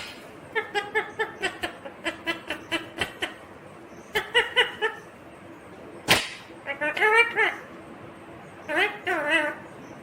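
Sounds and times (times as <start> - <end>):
parrot chuckling notes: 0.5 - 3.5, 4.1 - 5.1.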